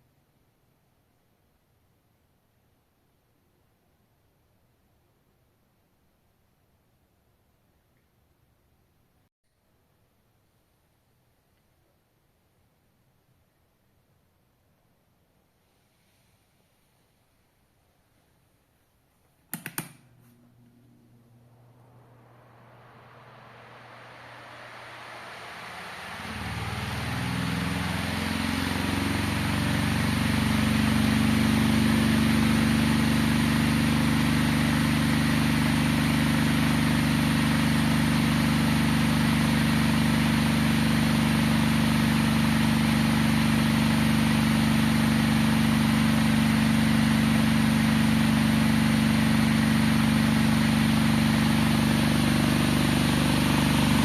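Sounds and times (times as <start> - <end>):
electric fan motor hum: 19.6 - 54.0
rush of air from fan: 20.4 - 54.0.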